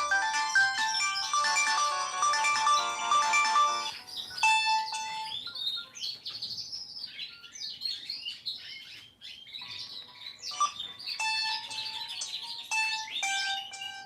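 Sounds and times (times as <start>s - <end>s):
bird-like chirps ringtone: 0.0s - 6.4s, 9.6s - 14.0s.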